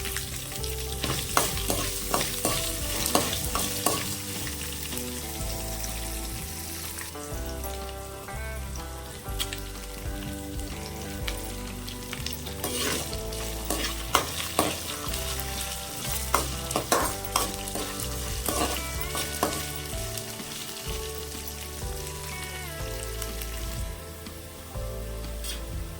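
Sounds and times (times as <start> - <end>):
background music with bass: 0.0 - 25.9
food sizzling in hot oil: 0.0 - 25.9
spatula scraping metal pan: 1.0 - 4.5, 12.6 - 19.8.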